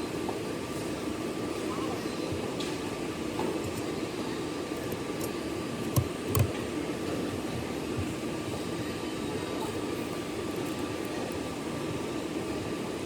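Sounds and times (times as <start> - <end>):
machine whirring: 2.2 - 13.0
faint steady high tone: 8.8 - 9.9.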